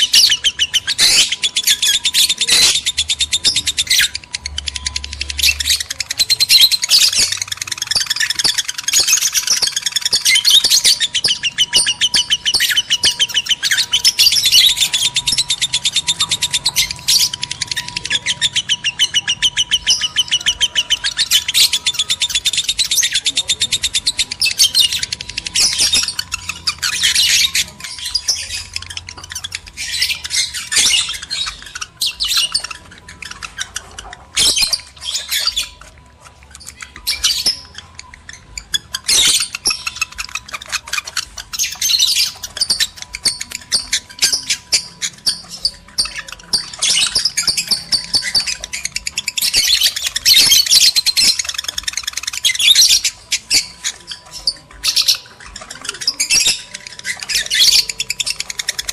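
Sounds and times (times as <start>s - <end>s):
lovebirds chattering and squawking: 0.0s - 58.9s.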